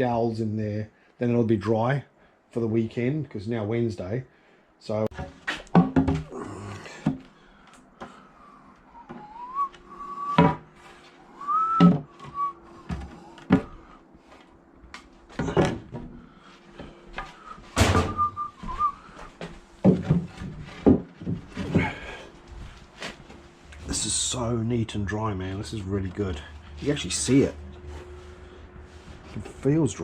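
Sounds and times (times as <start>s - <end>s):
wooden boards clunking: 5.1s - 6.3s, 15.3s - 16.9s, 17.8s - 18.9s, 19.8s - 22.2s
man whistling: 8.4s - 10.6s, 11.3s - 13.5s, 17.4s - 19.3s.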